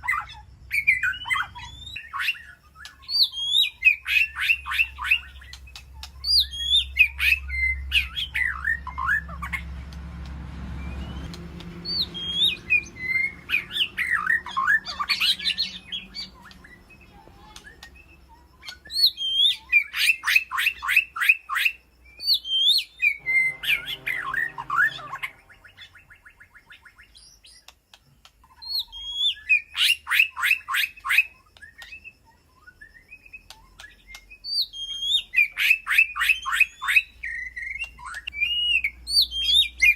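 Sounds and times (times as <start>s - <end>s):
bird singing whistles and trills: 0.0s - 9.7s, 10.7s - 27.8s, 28.4s - 39.9s
low rumble: 23.2s - 26.0s.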